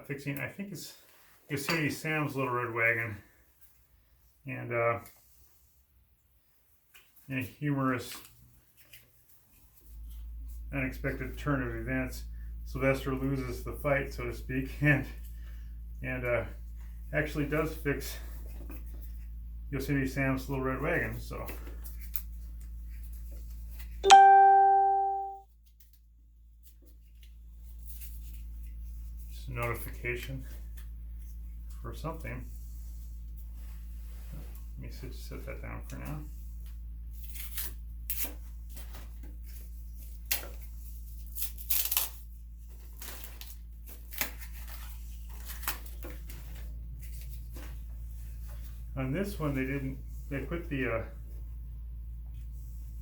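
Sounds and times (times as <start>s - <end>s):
electronic notification chime: 24.0s - 25.4s
rustling of packing tape: 37.1s - 47.7s.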